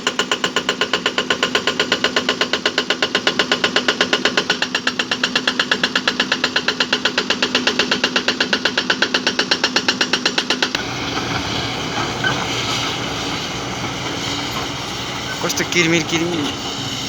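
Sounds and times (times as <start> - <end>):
hydraulic rock breaker hammering: 0.1 - 17.0
diesel engine humming: 10.8 - 17.0.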